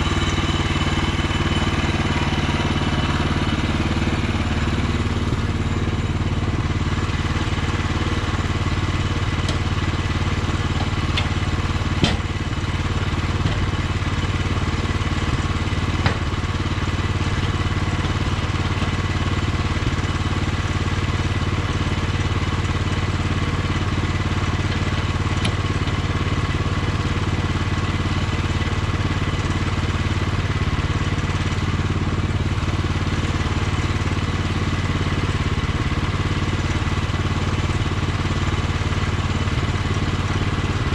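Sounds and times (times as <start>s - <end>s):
sawmill engine running: 0.0s - 40.9s
sharp knocks: 12.0s - 12.3s.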